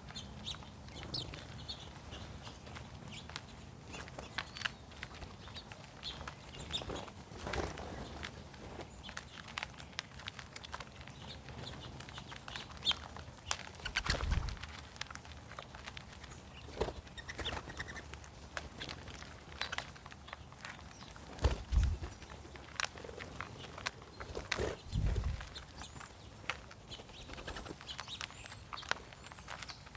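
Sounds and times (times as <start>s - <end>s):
light clicks of doves feeding: 0.0s - 29.9s
wing flutters: 13.7s - 14.8s, 21.2s - 28.0s.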